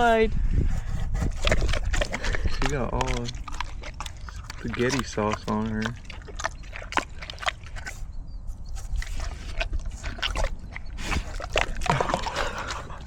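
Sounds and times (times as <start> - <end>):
pig chewing wetly: 0.7 - 13.0.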